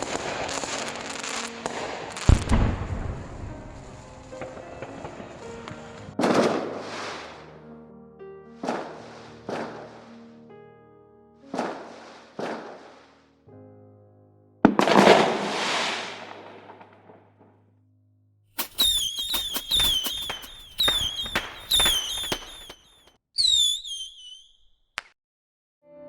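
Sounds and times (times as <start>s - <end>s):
firework bangs: 0.0s - 7.4s, 8.6s - 10.1s, 11.5s - 13.1s, 14.7s - 17.2s, 18.6s - 24.5s
firework crackle and hiss: 0.0s - 7.4s, 14.9s - 16.7s, 18.6s - 24.3s
high falling whistle: 18.6s - 24.8s.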